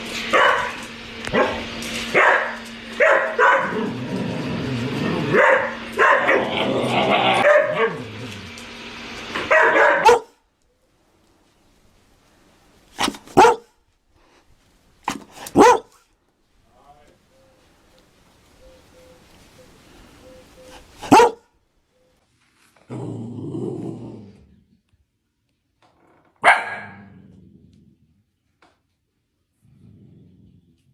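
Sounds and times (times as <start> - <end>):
dog barking: 0.3 - 3.9, 5.3 - 6.5, 7.4 - 8.0, 9.4 - 10.4, 13.0 - 13.8, 15.1 - 16.0, 20.7 - 21.5, 26.4 - 27.2
background noise: 10.4 - 30.9.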